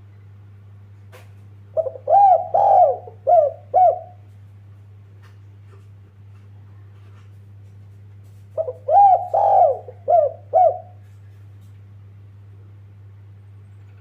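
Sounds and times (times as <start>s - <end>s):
steady low hum: 0.0s - 14.0s
dove cooing: 1.8s - 4.3s, 8.6s - 11.1s.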